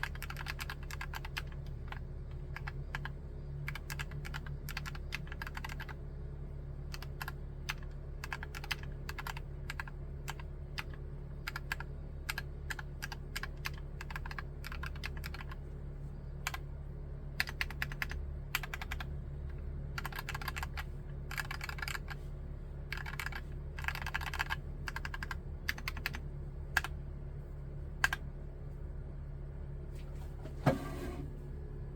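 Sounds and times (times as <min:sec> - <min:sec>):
mechanical keyboard typing: 0:00.0 - 0:06.0, 0:06.9 - 0:15.6, 0:17.4 - 0:19.1, 0:20.0 - 0:22.2, 0:22.9 - 0:26.9, 0:28.0 - 0:28.2.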